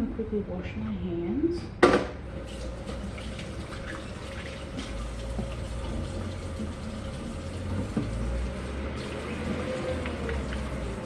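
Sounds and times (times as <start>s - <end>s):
small water splashes: 2.4s - 11.0s
water running from a tap: 2.4s - 11.0s.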